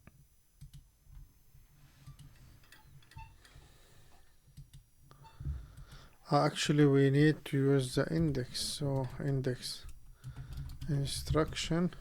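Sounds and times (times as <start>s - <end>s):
low steady hum: 0.0s - 12.0s
keyboard typing clicks: 8.3s - 11.6s.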